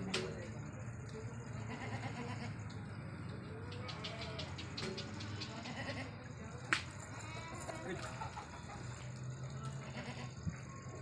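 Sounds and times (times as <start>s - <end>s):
goats bleating: 1.6s - 2.6s, 5.6s - 6.2s, 9.7s - 10.4s.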